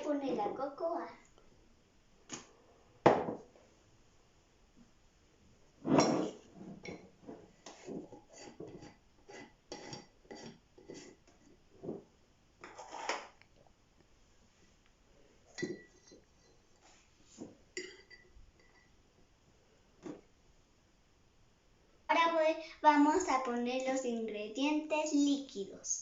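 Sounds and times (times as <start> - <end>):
spoon clinking against a bowl: 15.6 - 16.6, 17.8 - 18.9.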